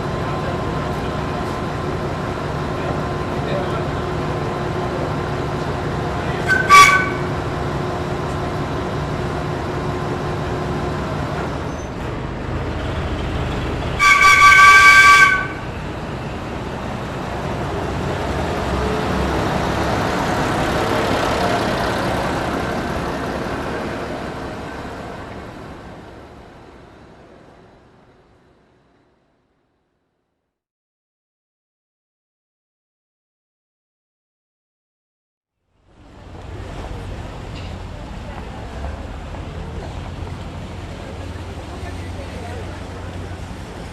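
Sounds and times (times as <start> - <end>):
train rumble passing: 0.0 - 29.6, 35.7 - 43.9
train horn: 6.4 - 7.4, 14.0 - 15.7.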